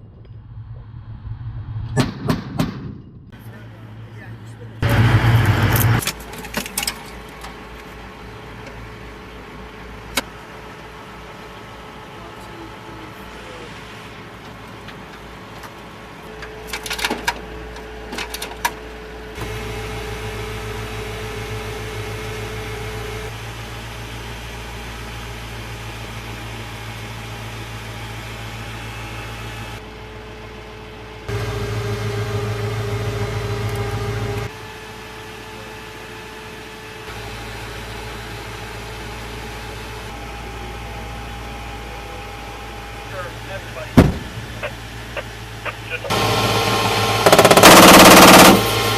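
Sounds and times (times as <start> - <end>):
steady whine: 0.0 - 14.4, 37.8 - 48.9
vehicle motor hum: 3.4 - 48.9.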